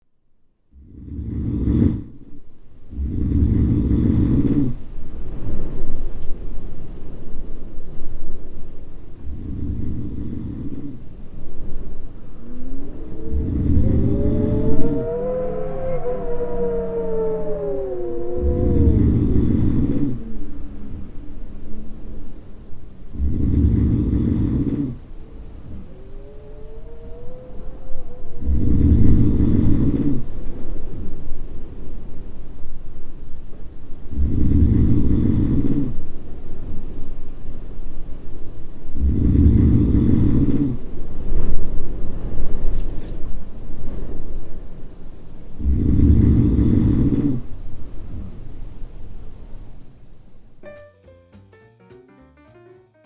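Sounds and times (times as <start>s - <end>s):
snoring: 0.8s - 2.2s, 2.9s - 4.8s, 9.2s - 11.1s, 12.8s - 15.1s, 18.4s - 20.4s, 23.1s - 25.1s, 28.4s - 30.6s, 34.1s - 36.1s, 38.9s - 40.9s, 45.6s - 48.4s
faint rising whistle: 10.8s - 23.1s, 24.8s - 34.1s.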